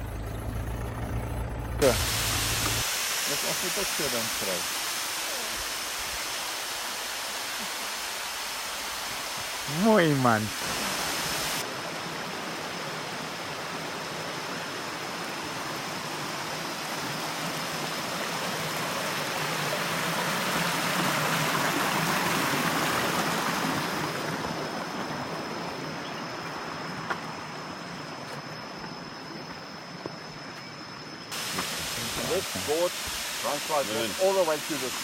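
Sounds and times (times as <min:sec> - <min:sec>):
river water flowing: 0:01.8 - 0:29.0, 0:31.3 - 0:35.0.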